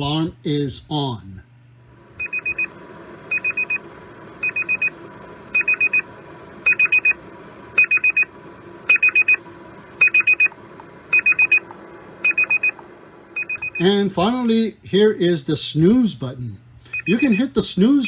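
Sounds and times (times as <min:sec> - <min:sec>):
alarm clock beeping: 0:02.2 - 0:02.7, 0:03.3 - 0:03.8, 0:04.4 - 0:04.9, 0:05.5 - 0:06.0, 0:06.6 - 0:07.2, 0:07.8 - 0:08.3, 0:08.9 - 0:09.4, 0:10.0 - 0:11.6, 0:12.2 - 0:12.8, 0:13.4 - 0:14.0, 0:16.9 - 0:17.6.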